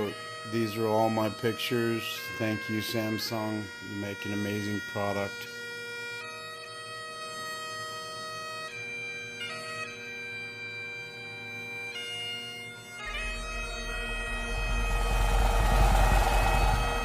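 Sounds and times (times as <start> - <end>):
bagpipe music: 0.0 - 17.0
low rumble: 13.0 - 17.0.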